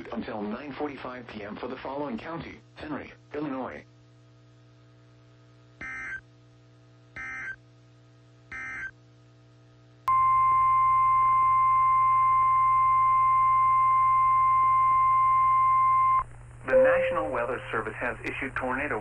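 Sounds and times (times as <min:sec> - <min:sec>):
steady warning alarm tone: 0:07.2 - 0:07.6, 0:11.8 - 0:18.1.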